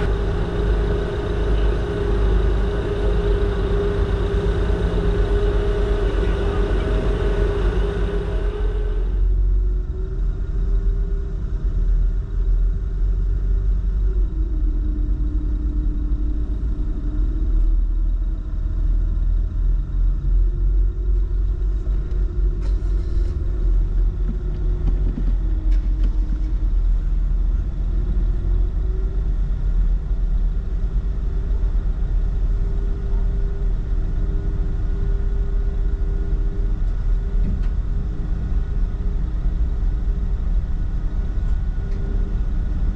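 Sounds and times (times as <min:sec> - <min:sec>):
low engine rumble: 0:00.0 - 0:42.9.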